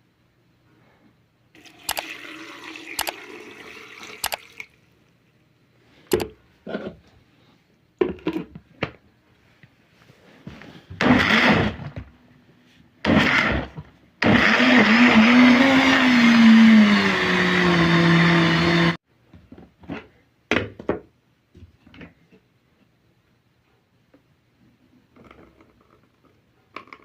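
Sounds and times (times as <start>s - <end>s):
electric blender grinding: 11.0s - 11.9s, 13.1s - 19.0s.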